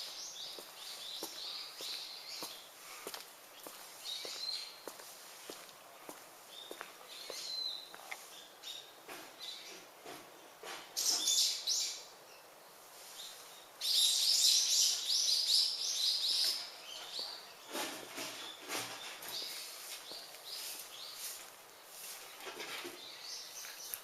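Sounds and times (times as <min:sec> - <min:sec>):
small birds chirping: 0:00.0 - 0:24.0
faint rustles and knocks: 0:09.0 - 0:11.3, 0:16.6 - 0:24.0.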